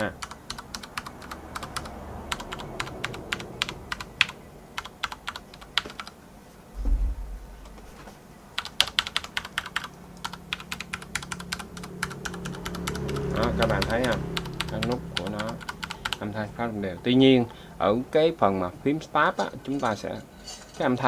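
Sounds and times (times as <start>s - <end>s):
mechanical keyboard typing: 0.0s - 6.2s, 8.6s - 16.2s
low thump: 6.8s - 8.2s.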